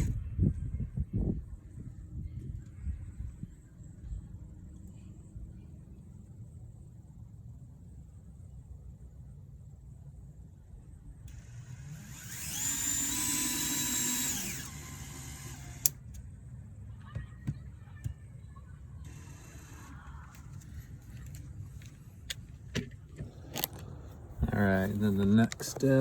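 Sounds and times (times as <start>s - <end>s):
power drill spinning: 11.3s - 16.1s, 19.0s - 21.8s
sharp clicks: 11.3s - 16.2s.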